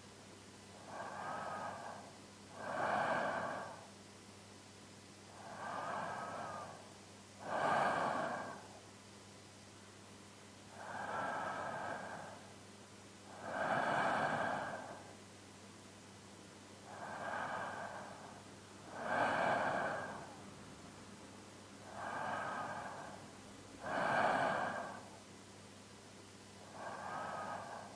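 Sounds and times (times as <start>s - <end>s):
man's deep sleeping breaths: 0.7s - 4.0s, 5.3s - 8.9s, 10.7s - 12.6s, 13.2s - 15.2s, 16.8s - 21.1s, 21.8s - 25.3s, 26.6s - 27.9s.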